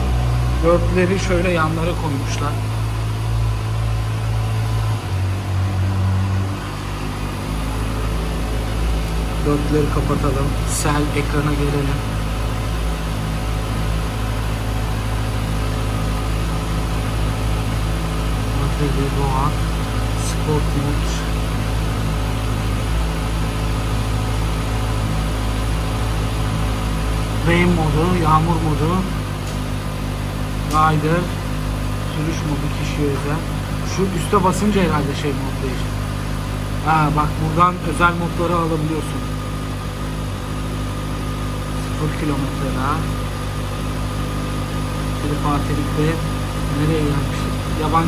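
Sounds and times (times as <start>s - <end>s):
motorcycle engine idling: 0.0s - 48.0s.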